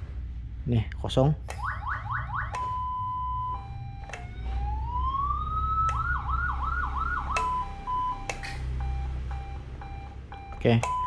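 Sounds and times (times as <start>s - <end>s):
electronic siren: 1.5s - 11.0s
switch click: 7.3s - 7.6s.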